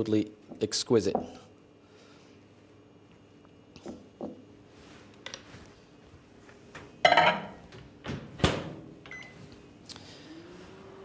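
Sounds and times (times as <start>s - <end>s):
microwave oven humming: 5.8s - 11.0s.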